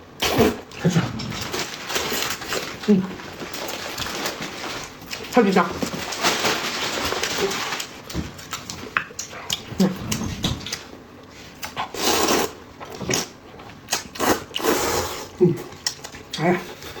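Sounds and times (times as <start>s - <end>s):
chewing with wet smacks: 7.8s - 11.0s, 15.4s - 17.0s
slurping noodles: 11.7s - 13.3s, 13.9s - 15.4s.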